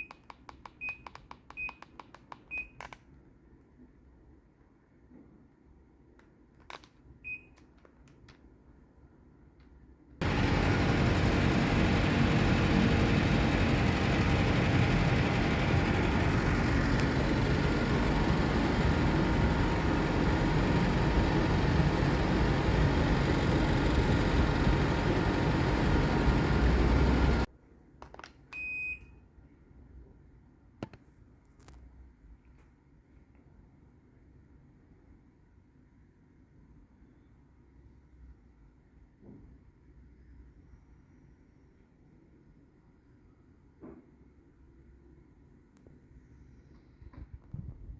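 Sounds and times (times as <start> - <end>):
air conditioner unit running: 10.2 - 27.5
clicks: 10.2 - 28.4.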